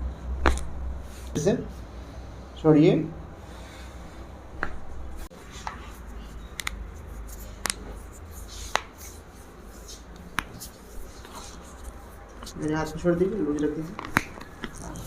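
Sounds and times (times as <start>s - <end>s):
joints cracking and popping: 13.5s - 15.0s.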